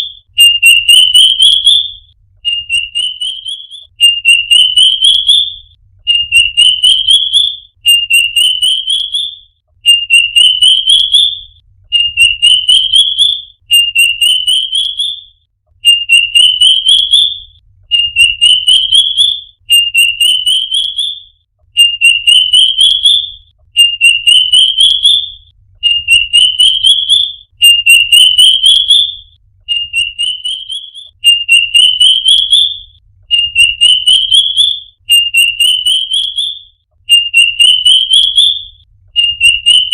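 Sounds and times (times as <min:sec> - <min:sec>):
bird song whistled notes: 0:00.0 - 0:39.9.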